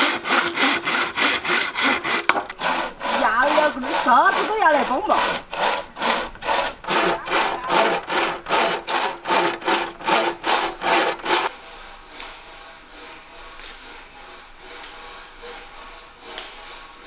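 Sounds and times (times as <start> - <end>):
hand saw cutting bamboo: 0.0 - 11.5.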